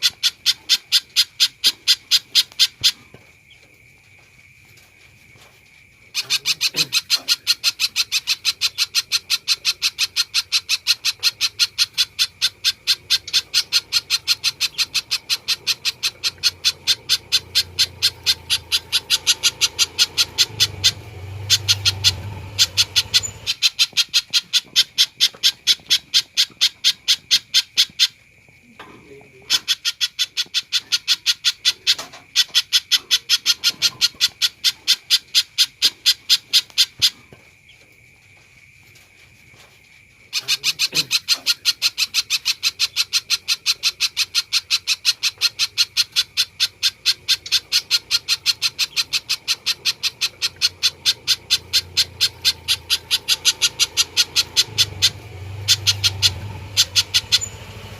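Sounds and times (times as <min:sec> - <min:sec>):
bird calling high repeated notes: 0:06.2 - 0:28.2, 0:40.4 - 0:57.9.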